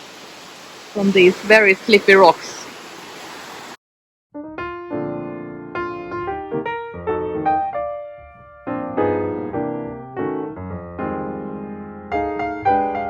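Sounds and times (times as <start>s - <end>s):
piano music: 4.4s - 13.0s.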